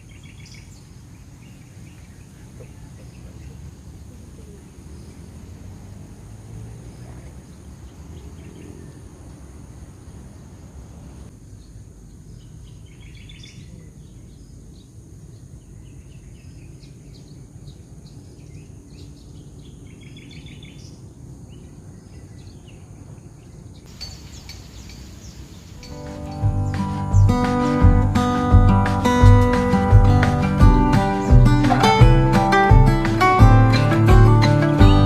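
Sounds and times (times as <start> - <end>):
high insect drone: 0.0 - 34.8
birds chirping: 0.0 - 35.0
bird trills: 23.9 - 27.8.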